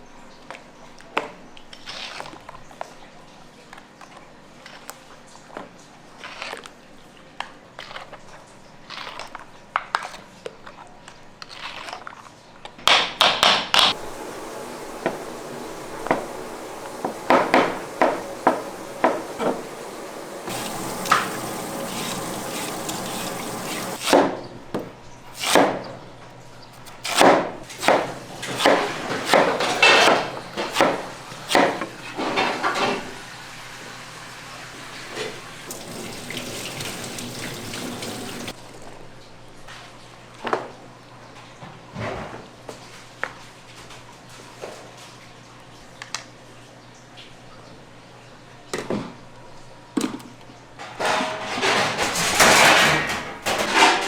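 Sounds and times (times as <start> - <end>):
utensils knocking and scraping: 13.9 - 24.1, 27.7 - 33.0.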